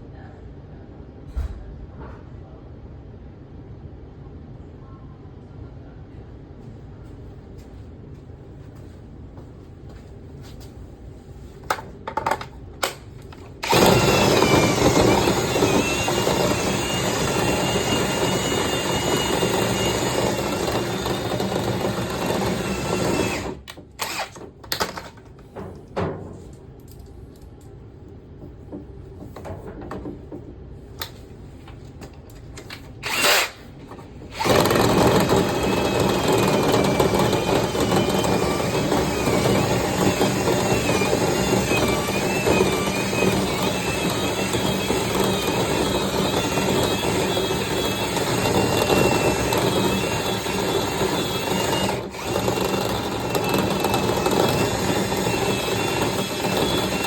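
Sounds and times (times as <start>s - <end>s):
power drill whining: 13.6s - 24.4s, 33.0s - 33.7s, 34.3s - 57.0s.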